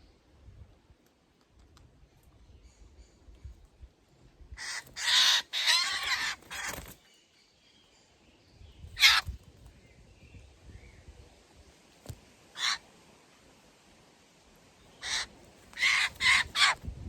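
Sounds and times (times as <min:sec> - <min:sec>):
jays screeching: 0:04.6 - 0:06.9, 0:15.0 - 0:16.8.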